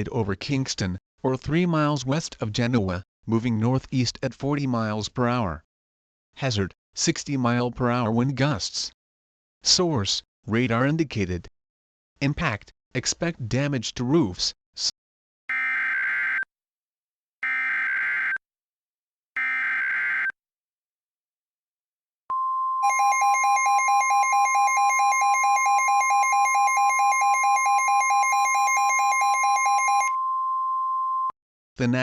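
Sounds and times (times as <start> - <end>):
steady warning tone: 22.8 - 30.3.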